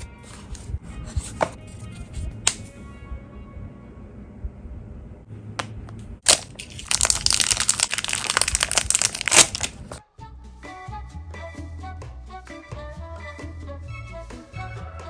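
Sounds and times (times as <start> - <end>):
foil packaging crinkling: 6.2 - 10.0
background music: 10.0 - 15.0.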